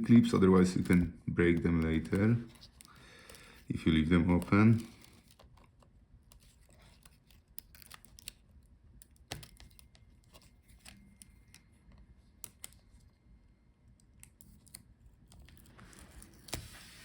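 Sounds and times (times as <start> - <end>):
small plastic clicks and taps: 9.0 - 12.9.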